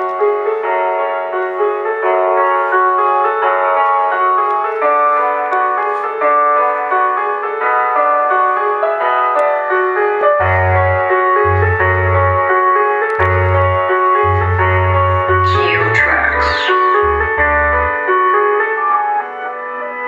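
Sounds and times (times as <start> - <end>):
keyboard melody over speakers: 0.0 - 20.0
deep pulsing bass notes: 10.4 - 18.0.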